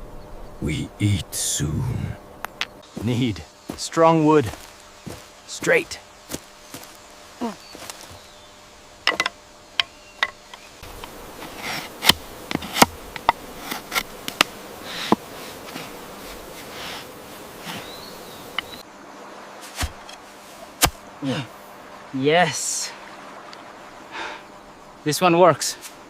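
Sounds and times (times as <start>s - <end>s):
sharp cracks and knocks: 9.0s - 11.1s, 12.0s - 15.2s, 20.8s - 21.0s.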